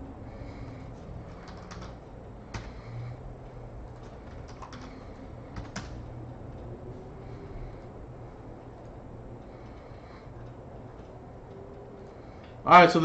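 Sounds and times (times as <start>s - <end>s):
low steady hum: 0.0s - 13.0s
computer keyboard keystrokes: 1.3s - 2.8s, 3.9s - 6.1s.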